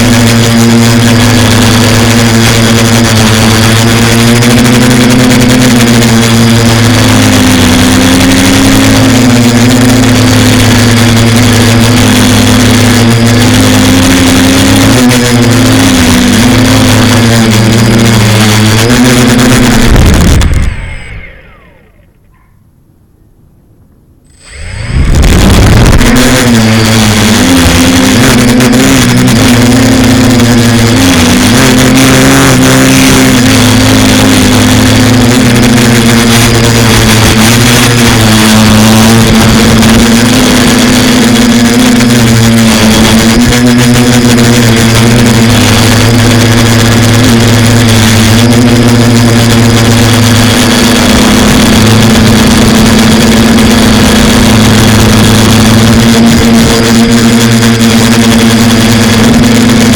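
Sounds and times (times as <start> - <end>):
quadcopter propellers buzzing: 0.0 - 22.5, 24.3 - 59.9.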